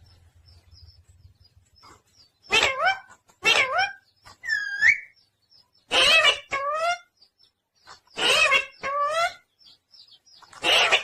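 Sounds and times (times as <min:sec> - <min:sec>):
parrot calling: 0:02.5 - 0:05.2, 0:05.9 - 0:07.1, 0:08.2 - 0:09.4, 0:10.5 - 0:11.0.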